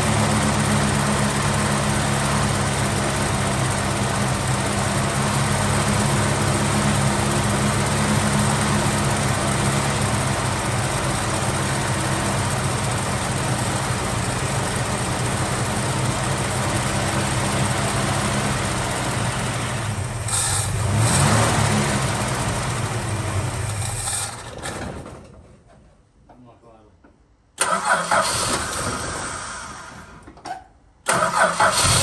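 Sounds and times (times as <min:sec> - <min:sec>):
car engine idling: 0:00.0 - 0:24.6.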